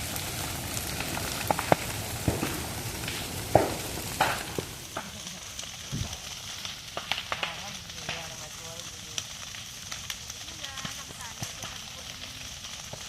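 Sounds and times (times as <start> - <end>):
vegetation burning with crackles: 0.0 - 13.0.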